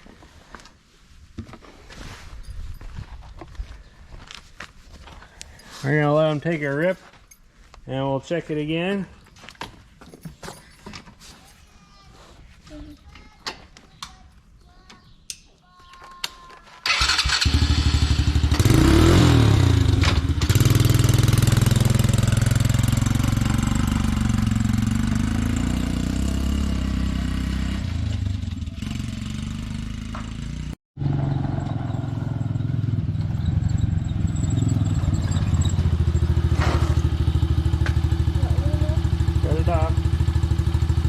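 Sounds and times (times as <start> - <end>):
small atv engine revving: 16.9 - 41.0.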